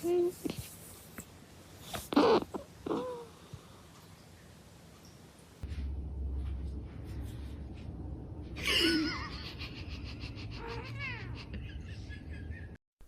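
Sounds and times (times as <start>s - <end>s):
low steady rumble: 5.6s - 12.7s
cat meowing: 10.6s - 11.4s.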